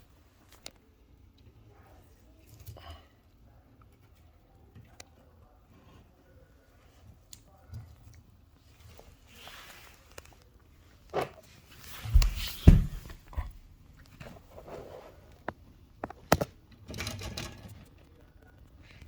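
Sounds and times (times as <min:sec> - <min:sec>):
heavy thumps: 0:12.0 - 0:13.6.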